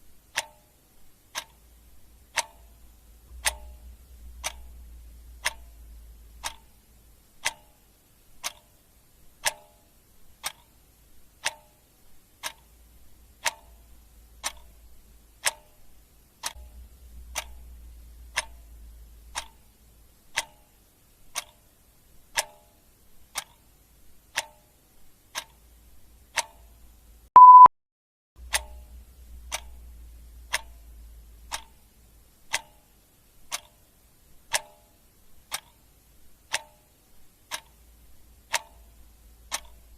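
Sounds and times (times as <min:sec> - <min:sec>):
clock ticking: 0:00.2 - 0:27.7, 0:28.4 - 0:39.9
short high electronic beep: 0:27.4 - 0:27.7.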